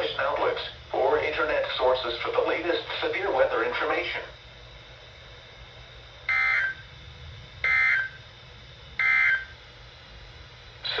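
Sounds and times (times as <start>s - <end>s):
faint low hum: 0.0s - 11.0s
two-tone digital data bursts: 6.3s - 6.8s.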